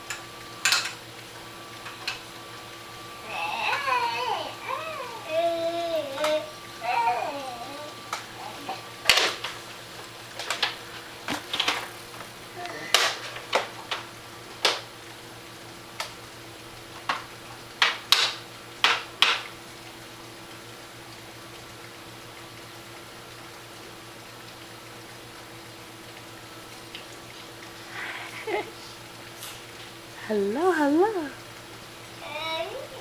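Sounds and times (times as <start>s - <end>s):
faint steady hum: 0.0s - 33.0s
child making mouth sounds: 32.2s - 33.0s.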